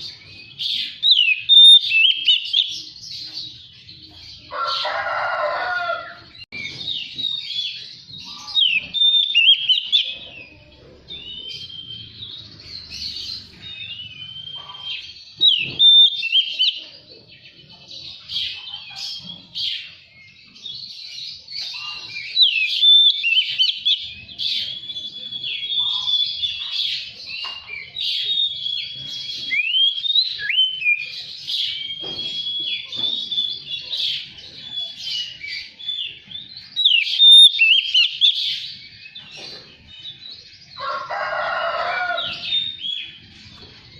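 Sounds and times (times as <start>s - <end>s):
bird singing whistles and trills: 0.0s - 3.6s, 6.3s - 16.9s, 21.3s - 40.4s.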